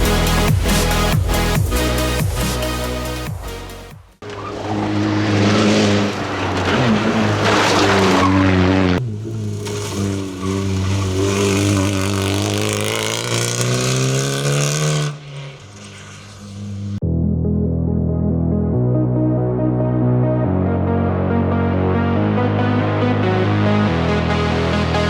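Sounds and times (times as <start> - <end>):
rally car engine at racing revs: 4.2 - 17.0
tyre and road noise: 4.2 - 17.0.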